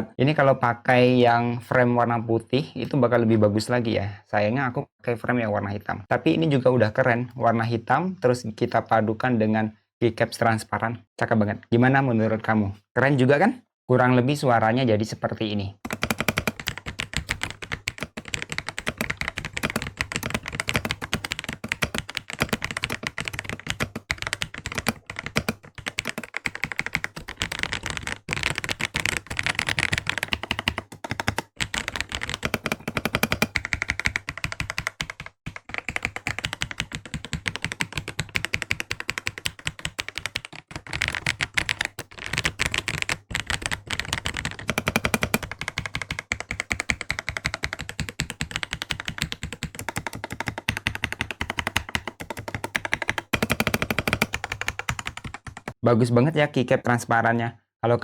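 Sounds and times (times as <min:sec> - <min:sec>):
mechanical keyboard typing: 0:15.9 - 0:55.8.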